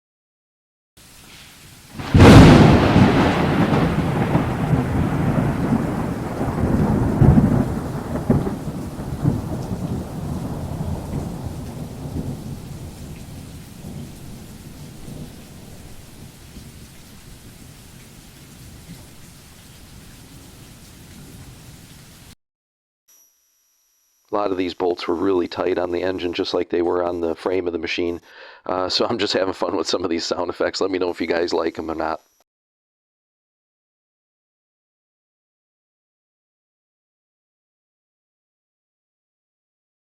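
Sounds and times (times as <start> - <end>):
steady rain: 1.0 - 22.4
thunderclap and rumble: 2.0 - 17.8.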